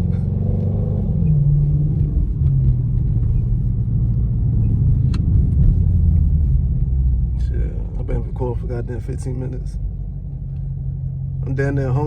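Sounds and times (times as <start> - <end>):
car engine cruising: 0.0 - 12.0.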